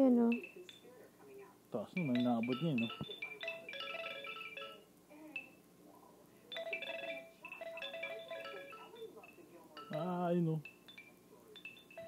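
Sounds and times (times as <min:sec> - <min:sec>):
baby rattle chiming: 0:00.3 - 0:00.8, 0:01.9 - 0:05.6, 0:06.5 - 0:12.0.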